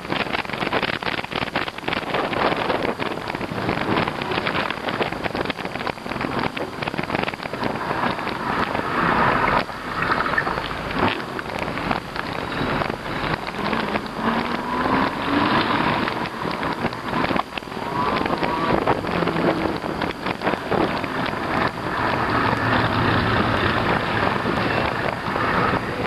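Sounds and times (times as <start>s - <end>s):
road noise: 0.0s - 26.0s
small clicks and rattles: 0.0s - 26.0s
wind buffeting microphone: 0.0s - 26.0s
faint rising whine: 6.8s - 26.0s.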